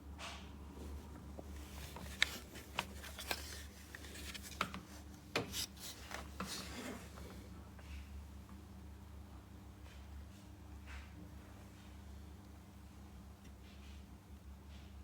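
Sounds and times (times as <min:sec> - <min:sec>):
rustling: 0:00.8 - 0:04.7.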